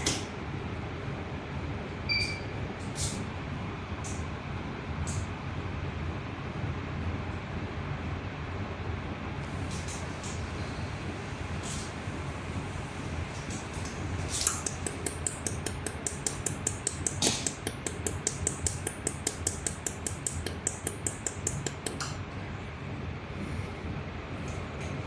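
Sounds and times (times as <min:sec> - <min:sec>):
machine cooling hum: 0:00.0 - 0:25.0
laser welder snapping ticks: 0:14.4 - 0:22.2.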